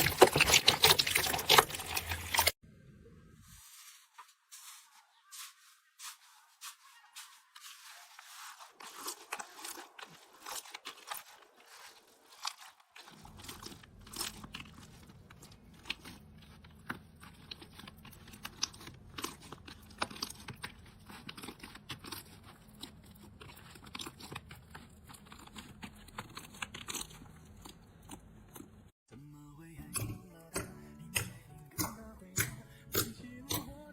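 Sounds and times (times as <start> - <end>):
crunchy slime crackling: 6.6 - 28.9.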